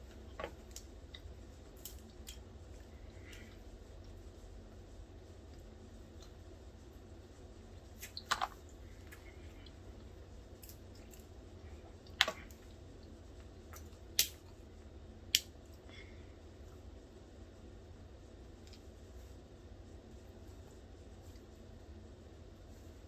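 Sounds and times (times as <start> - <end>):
shell cracking snaps: 13.8 - 14.5, 15.3 - 15.5.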